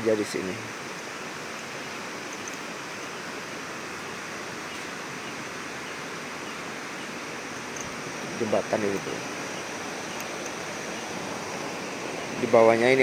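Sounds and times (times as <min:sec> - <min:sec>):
river water rushing: 0:00.0 - 0:13.0.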